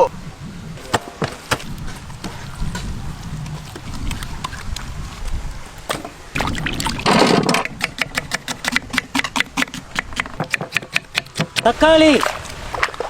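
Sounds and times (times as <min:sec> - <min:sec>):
wet splash: 0:05.9 - 0:07.1, 0:12.0 - 0:13.0.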